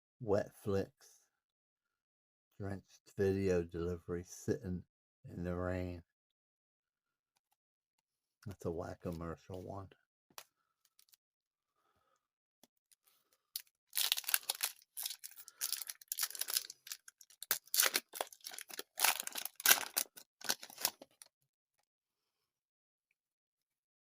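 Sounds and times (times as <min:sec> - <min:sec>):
card pack wrapper tearing and crinkling: 0:13.6 - 0:21.3.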